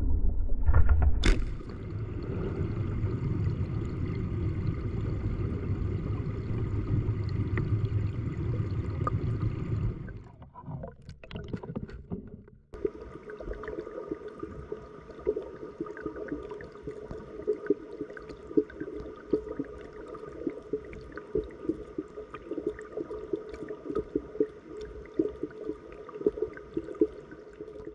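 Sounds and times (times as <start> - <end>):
underwater stream rushing: 0.0 - 27.9
bubbles clicking and popping: 10.1 - 27.9.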